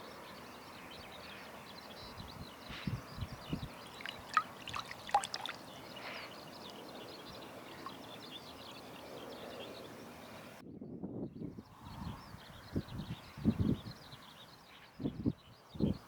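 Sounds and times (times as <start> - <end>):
water trickling: 3.8 - 6.9, 7.6 - 8.2.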